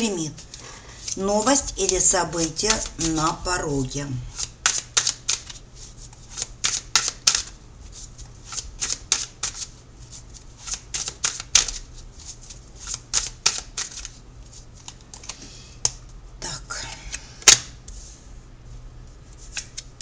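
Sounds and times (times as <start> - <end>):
cards being shuffled: 0.5 - 3.4, 4.3 - 16.0, 19.2 - 20.0.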